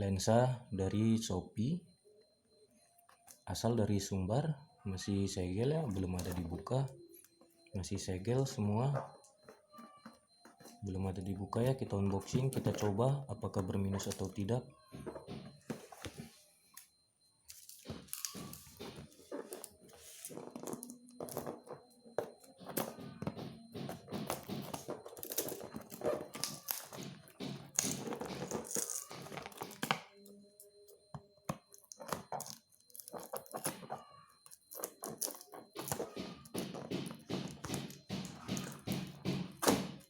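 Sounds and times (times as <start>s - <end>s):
knocks of box handling: 35.6s - 40.0s.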